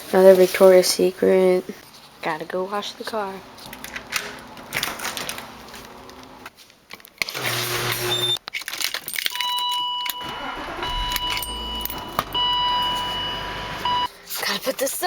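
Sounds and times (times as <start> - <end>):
car keys jangling: 8.4 - 13.8
car warning chime tone: 9.4 - 14.1.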